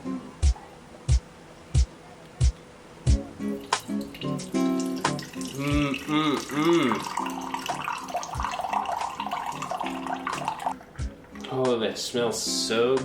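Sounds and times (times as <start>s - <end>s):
background music: 0.0s - 13.0s
liquid pouring into a cup: 3.4s - 11.6s.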